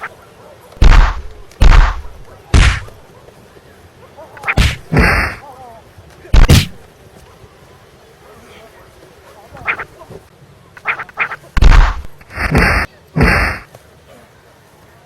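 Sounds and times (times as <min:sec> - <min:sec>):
heavy punch and kick impacts: 0:00.8 - 0:02.9, 0:04.6 - 0:05.4, 0:06.4 - 0:06.8, 0:11.6 - 0:13.5.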